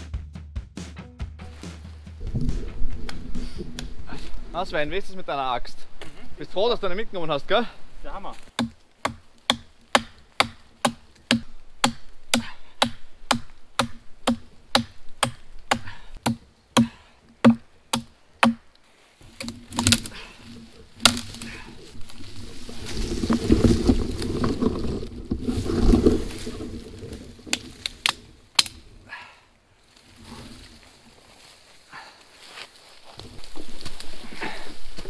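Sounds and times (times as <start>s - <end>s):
wood cracking: 2.2s - 4.9s, 8.3s - 29.0s
axe chopping wood: 8.5s - 18.7s, 19.4s - 20.2s, 21.0s - 21.6s.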